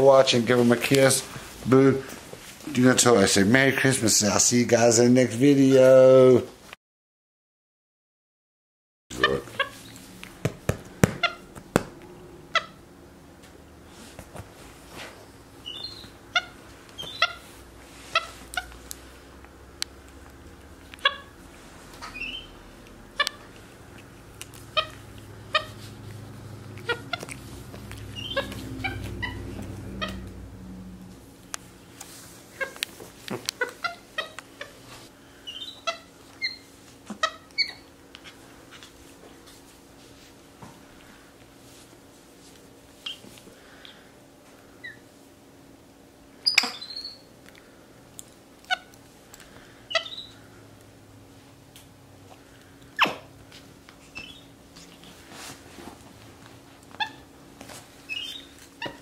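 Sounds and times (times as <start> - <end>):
faint low hum: 9.1 - 59.0
monkeys chirping and squeaking: 9.2 - 10.0, 11.2 - 11.5, 15.6 - 18.8, 21.0 - 21.4, 22.0 - 22.6, 24.6 - 25.8, 26.6 - 30.3, 33.6 - 34.8, 35.4 - 38.4, 46.4 - 47.3, 49.9 - 50.4, 54.0 - 55.1, 56.9 - 57.3, 58.0 - 59.0
monkeys high-pitched calls: 28.0 - 30.2, 35.4 - 37.9, 46.4 - 47.3, 49.9 - 50.4.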